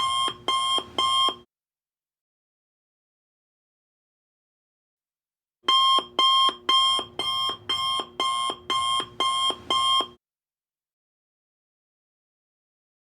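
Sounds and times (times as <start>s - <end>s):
two-note electronic alarm beeps: 5.7s - 10.1s.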